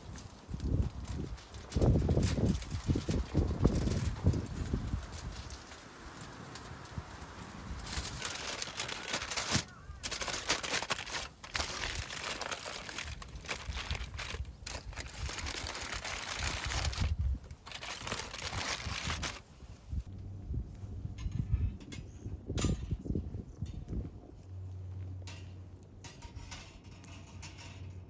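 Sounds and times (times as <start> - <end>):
rustling and crinkling: 0.0 - 21.4.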